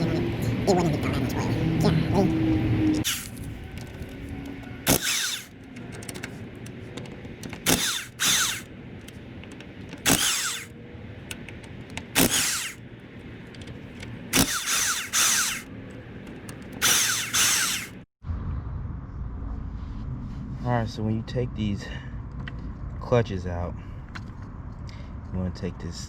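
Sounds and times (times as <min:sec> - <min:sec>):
power drill whining in bursts: 0:03.0 - 0:03.4, 0:04.8 - 0:05.6, 0:07.6 - 0:08.7, 0:10.0 - 0:10.7, 0:12.2 - 0:12.8, 0:14.3 - 0:15.7, 0:16.8 - 0:18.1.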